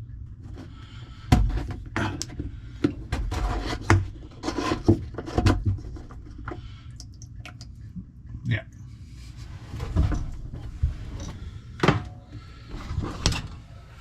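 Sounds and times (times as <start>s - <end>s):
knocks and scraping of dishwasher parts: 2.8s - 6.2s, 9.6s - 13.6s.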